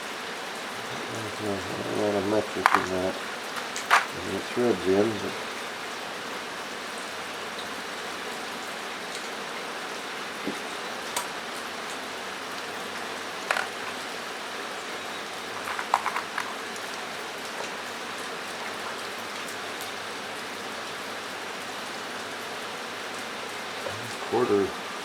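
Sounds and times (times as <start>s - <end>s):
rain on a metal roof: 0.0s - 25.0s
sharp clicks: 2.6s - 4.2s, 13.5s - 14.0s.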